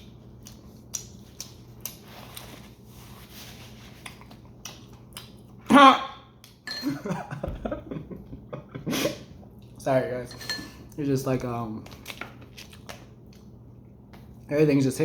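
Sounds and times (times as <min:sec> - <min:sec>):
person chewing food: 0:00.0 - 0:05.6, 0:11.9 - 0:14.4
wordless vocal exclamation: 0:05.7 - 0:06.2.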